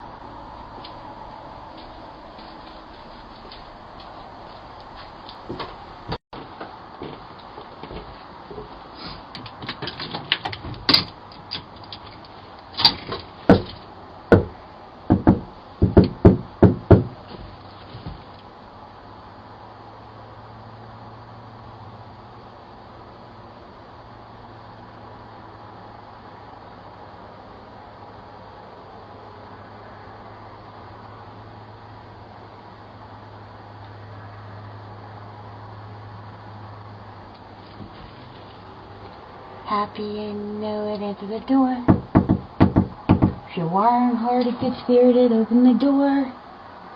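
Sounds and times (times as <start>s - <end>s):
low hum: 0.0s - 6.2s
microphone hiss: 0.0s - 46.9s
knocking on a door: 13.5s - 17.2s, 41.9s - 43.5s.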